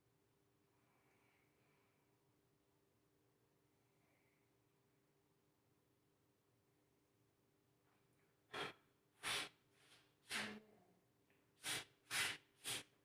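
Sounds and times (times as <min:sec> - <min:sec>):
puffs of breath: 0:08.5 - 0:10.6, 0:11.6 - 0:13.0.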